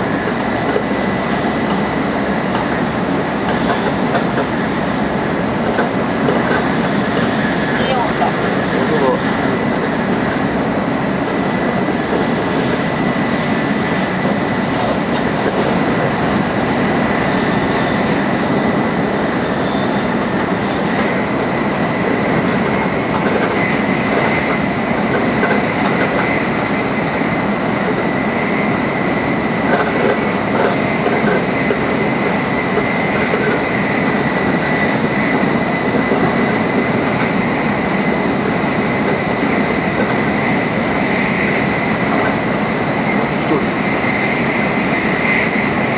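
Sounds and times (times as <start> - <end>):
train wheels rumbling on rails: 0.0 - 45.9
high whine: 1.8 - 20.8, 26.5 - 30.5.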